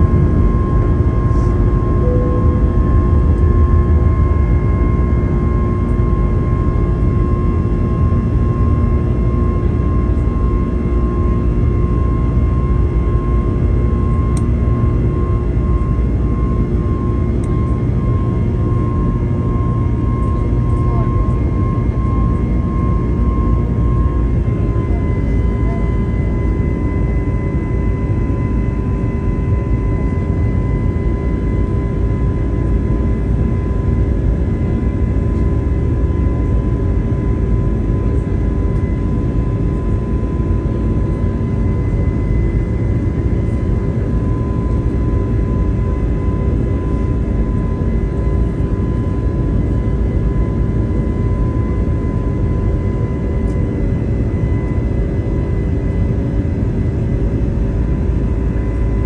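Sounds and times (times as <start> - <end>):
whining engine tones: 0.0 - 7.1
jet engine and airflow rush: 0.0 - 10.0.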